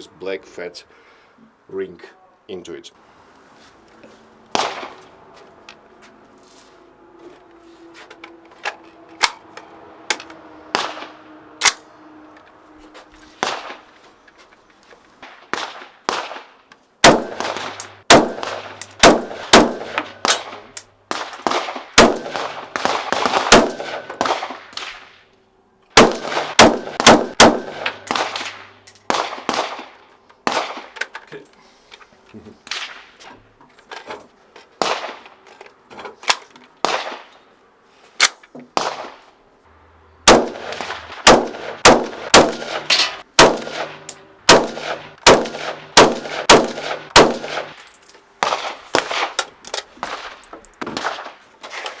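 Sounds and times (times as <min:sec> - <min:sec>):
rifle shots with ringing echo: 0:15.5 - 0:25.0, 0:26.0 - 0:30.9, 0:40.3 - 0:47.8.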